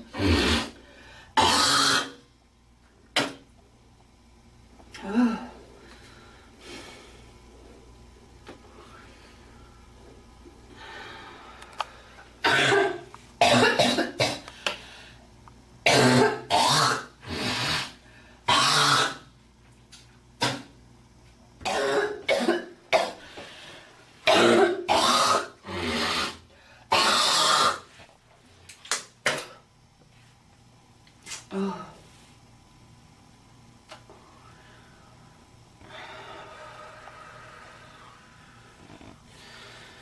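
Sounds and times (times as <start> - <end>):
girl coughing: 12.4 - 14.5, 21.7 - 23.2, 24.3 - 25.3.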